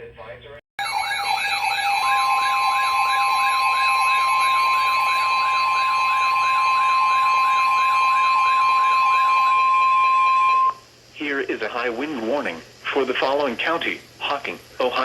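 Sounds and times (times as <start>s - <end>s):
steady high tone: 0.8s - 10.8s
warbling electronic alarm siren: 0.8s - 10.8s.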